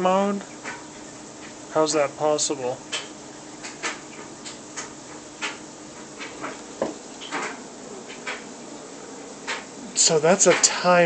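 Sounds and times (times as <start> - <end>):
faint steady hum: 0.0 - 11.0
faint clicks and knocks: 2.9 - 8.8, 9.4 - 9.7.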